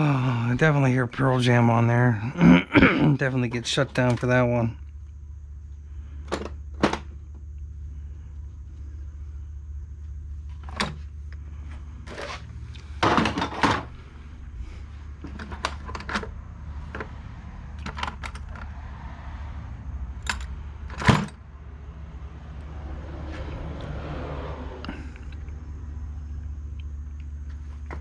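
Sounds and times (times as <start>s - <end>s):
steady low hum: 0.0s - 28.0s
small tools and metal parts clattering: 12.0s - 14.0s, 15.2s - 17.2s, 17.8s - 18.7s, 20.2s - 21.4s.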